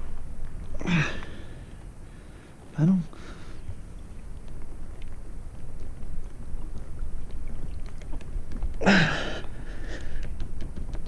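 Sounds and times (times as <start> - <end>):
person grunting: 0.8 - 1.2, 8.8 - 9.4
faint small clicks: 4.0 - 8.8, 9.4 - 11.0.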